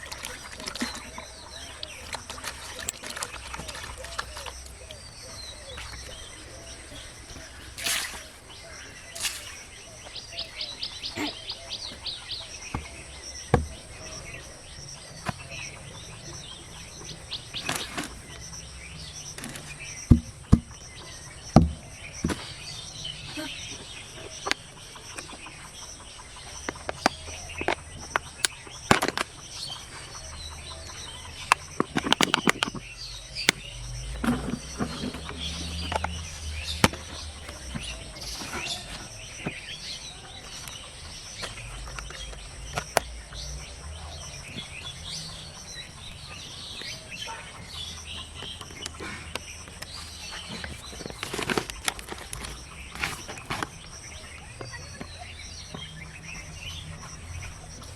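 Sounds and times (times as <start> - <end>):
birds chirping: 0.0 - 57.9
sharp clicks and knocks: 26.6 - 29.8, 31.4 - 38.7, 41.4 - 43.4.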